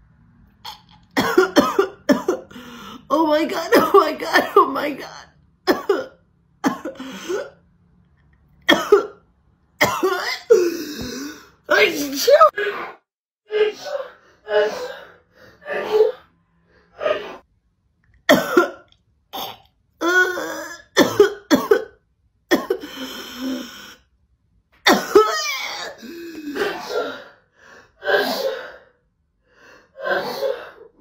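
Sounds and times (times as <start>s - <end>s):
person coughing: 0.7s - 2.6s, 3.5s - 7.6s, 8.7s - 9.2s, 9.8s - 12.5s, 18.3s - 19.7s, 20.3s - 23.0s, 24.9s - 27.2s
person clearing throat: 18.3s - 19.7s.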